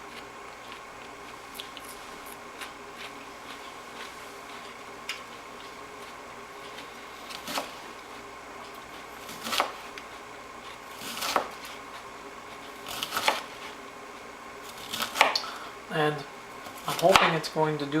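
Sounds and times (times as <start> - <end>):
knife slicing onto cutting board: 9.2 - 10.0, 10.9 - 11.8, 12.8 - 13.8.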